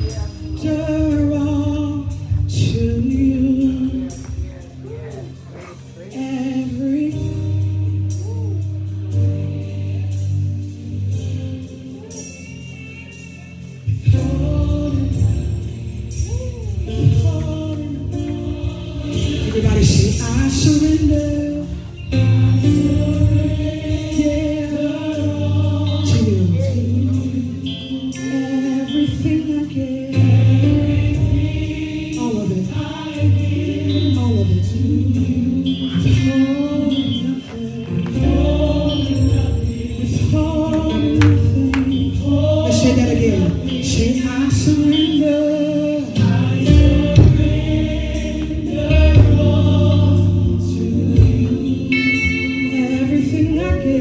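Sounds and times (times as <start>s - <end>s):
gospel choir singing: 0.0s - 54.0s
live band playing: 35.4s - 47.6s.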